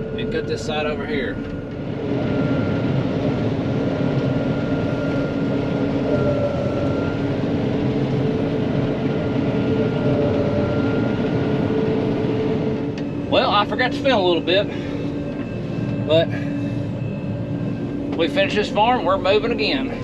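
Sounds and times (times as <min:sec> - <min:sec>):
combine harvester droning: 0:00.0 - 0:20.0.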